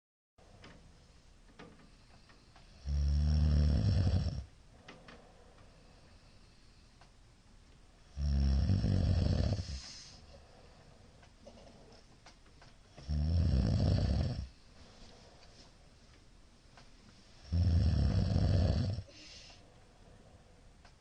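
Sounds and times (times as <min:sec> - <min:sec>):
man snoring loudly: 0:02.8 - 0:04.5, 0:08.1 - 0:09.8, 0:13.0 - 0:14.5, 0:17.5 - 0:19.1
short breathy hiss: 0:09.6 - 0:10.4, 0:19.1 - 0:19.7.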